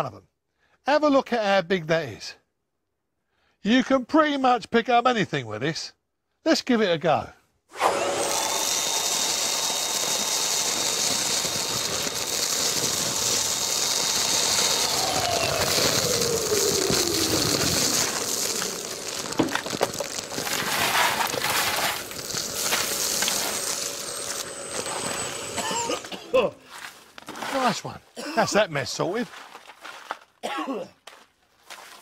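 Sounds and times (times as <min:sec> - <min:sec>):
vacuum cleaner running: 0:07.7 - 0:26.5
debris clattering through hose: 0:07.8 - 0:26.2.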